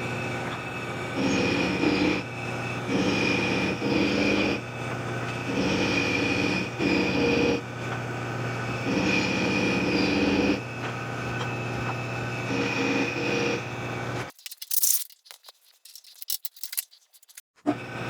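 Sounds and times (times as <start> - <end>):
die cutting threads on steel: 14.3 - 17.4.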